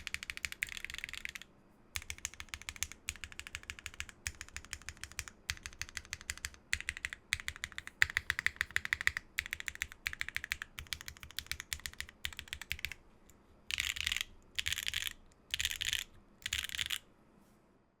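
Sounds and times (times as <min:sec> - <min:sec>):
rapid keyboard clatter: 0:00.0 - 0:01.4, 0:02.0 - 0:13.0
mechanical keyboard typing: 0:00.0 - 0:13.0, 0:13.7 - 0:17.0.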